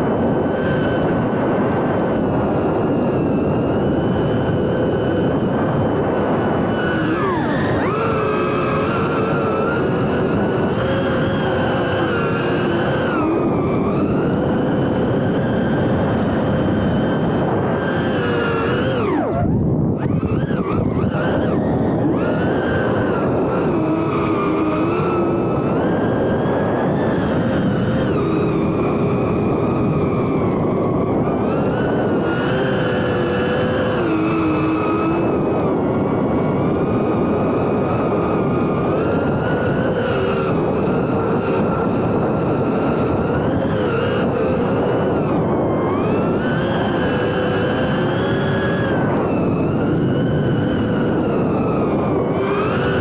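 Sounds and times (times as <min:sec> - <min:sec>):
drone motors whining: 0:00.0 - 0:53.0
wind noise: 0:00.0 - 0:53.0.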